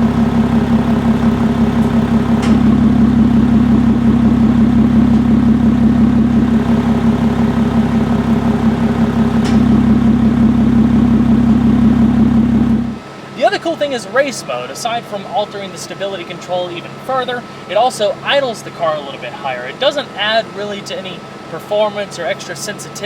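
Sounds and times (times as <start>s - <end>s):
car engine idling: 0.0s - 13.2s.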